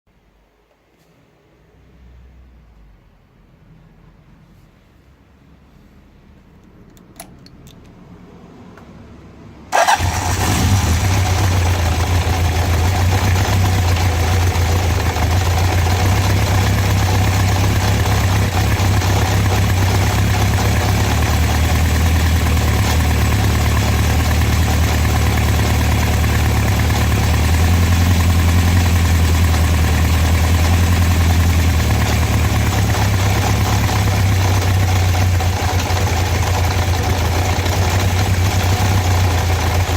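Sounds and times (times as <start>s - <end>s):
engine rattle: 9.7s - 39.9s
motorcycle engine idling: 9.8s - 39.9s.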